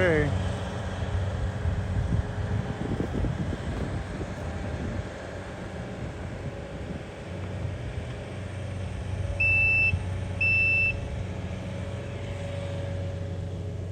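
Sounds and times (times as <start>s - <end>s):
vehicle engines rumbling: 0.0s - 13.9s.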